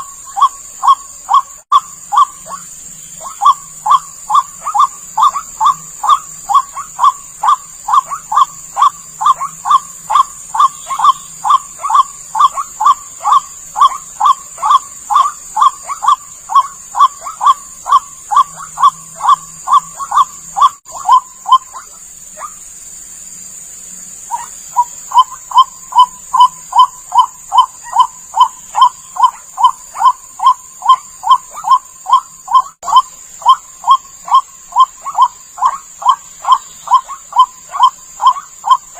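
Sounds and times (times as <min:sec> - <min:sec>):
waterhen calling: 0:00.0 - 0:22.6, 0:24.0 - 0:38.9
steady high hiss: 0:00.0 - 0:38.9.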